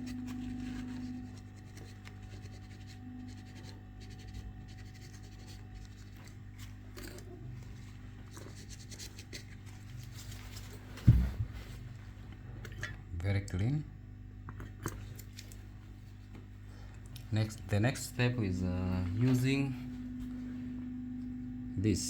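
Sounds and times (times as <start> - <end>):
tool scratching circuit board: 0.0 - 6.3
low hum: 16.4 - 22.0.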